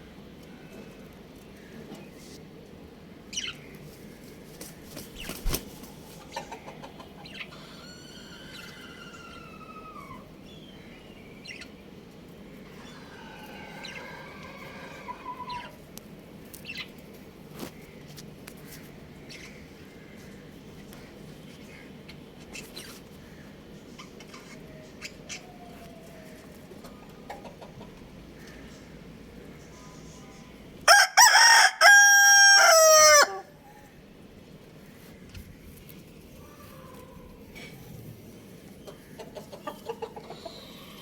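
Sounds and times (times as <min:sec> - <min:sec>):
rooster crowing: 0:07.5 - 0:10.2, 0:12.8 - 0:15.7, 0:30.9 - 0:33.6.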